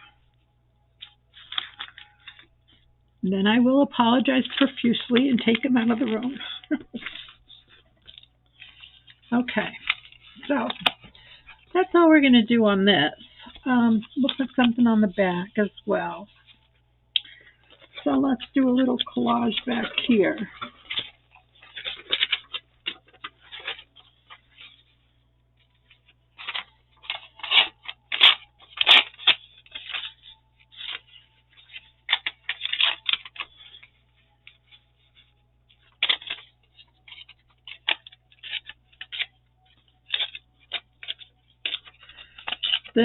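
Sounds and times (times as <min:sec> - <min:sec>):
paper rustling and crinkling: 0:01.0 - 0:02.9, 0:04.0 - 0:11.9, 0:13.1 - 0:43.0.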